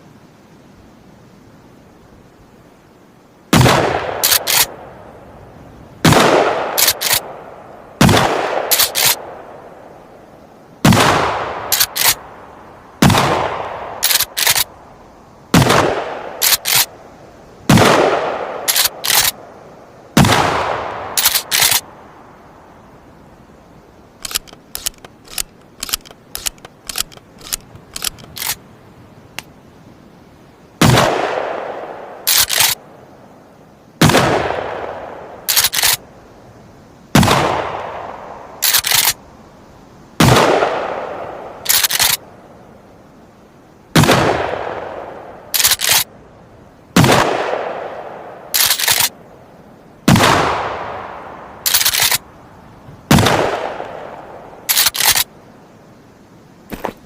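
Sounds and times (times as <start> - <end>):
shotgun shots echoing: 3.6 - 4.7, 6.0 - 7.4, 8.0 - 9.2, 13.0 - 14.7, 15.5 - 16.9, 17.7 - 19.4, 37.2 - 38.1, 40.2 - 41.1, 47.0 - 48.0, 50.1 - 50.9, 53.1 - 54.1
short clicks: 4.2 - 4.7, 6.8 - 7.2, 8.7 - 9.2, 11.7 - 12.2, 14.0 - 14.7, 16.4 - 16.9, 18.7 - 19.4, 21.2 - 21.8, 24.2 - 28.6, 32.3 - 32.8, 35.5 - 36.0, 38.6 - 39.2, 41.7 - 42.2, 45.6 - 46.1, 48.6 - 49.1, 51.7 - 52.2, 54.7 - 55.3
shotgun pump racking clacks: 4.2 - 4.7, 6.8 - 7.2, 8.7 - 9.2, 11.7 - 12.2, 14.0 - 14.6, 16.4 - 16.9, 18.7 - 19.3, 21.2 - 21.8, 24.2 - 28.6, 32.3 - 32.8, 35.5 - 36.0, 38.6 - 39.2, 41.7 - 42.2, 45.6 - 46.0, 48.6 - 49.1, 51.7 - 52.2, 54.7 - 55.2.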